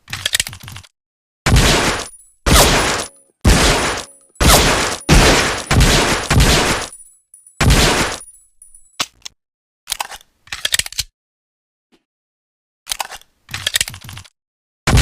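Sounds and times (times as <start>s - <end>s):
pistol shots echoing: 1.5s - 7.0s, 7.6s - 8.3s.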